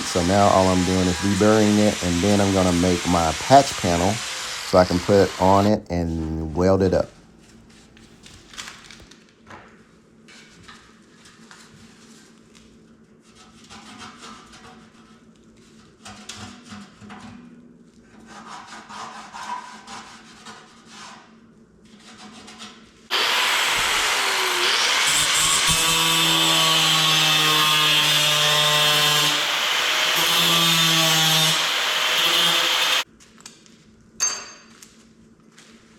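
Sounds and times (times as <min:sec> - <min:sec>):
power tool running: 0:00.0 - 0:05.8, 0:23.1 - 0:33.0
tool scraping metal: 0:00.0 - 0:06.3, 0:22.0 - 0:33.1.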